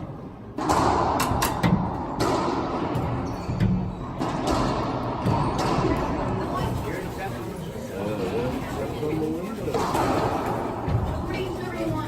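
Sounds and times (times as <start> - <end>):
ball smacking racquets and walls: 0.5 - 6.1.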